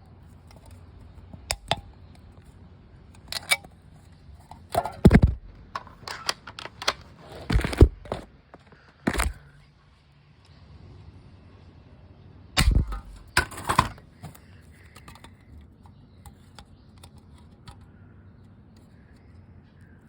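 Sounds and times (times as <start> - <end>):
airsoft shotgun bang: 12.6 - 13.2.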